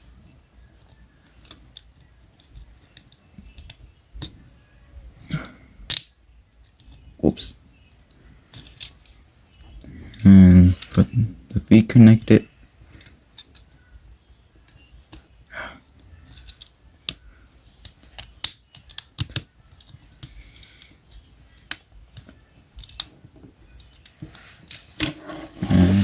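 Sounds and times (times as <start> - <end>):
plastic toy joints clicking: 8.5 - 9.2, 16.2 - 17.2, 17.8 - 20.3.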